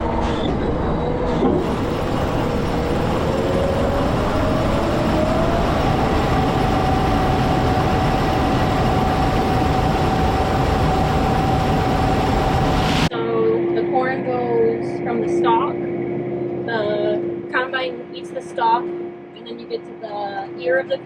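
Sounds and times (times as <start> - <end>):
rising whine: 0.0 - 17.6
tractor engine under load: 1.3 - 5.6.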